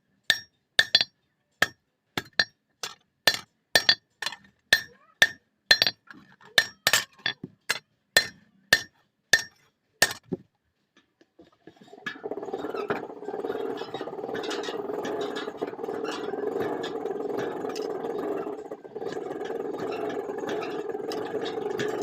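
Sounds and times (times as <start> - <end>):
hammer striking steel on anvil: 0.3 - 2.5, 3.3 - 4.0, 4.7 - 6.0, 8.2 - 10.2.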